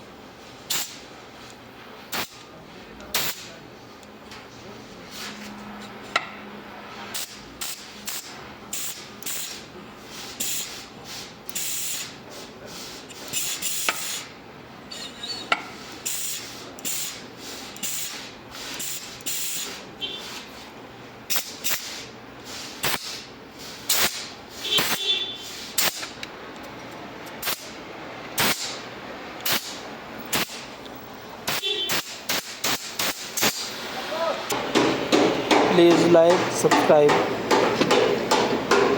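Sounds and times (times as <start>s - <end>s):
short hissing bursts: 0.7s - 1.0s, 7.1s - 14.3s, 15.8s - 20.7s, 21.3s - 26.1s, 28.4s - 28.8s, 29.4s - 30.6s, 31.5s - 34.4s.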